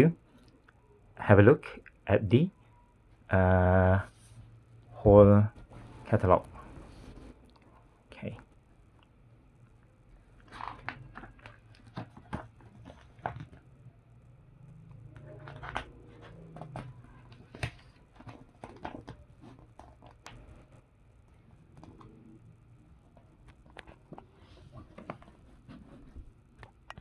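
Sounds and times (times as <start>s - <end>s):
paper pages rustling: 10.4s - 13.7s, 15.2s - 20.8s, 23.1s - 26.3s.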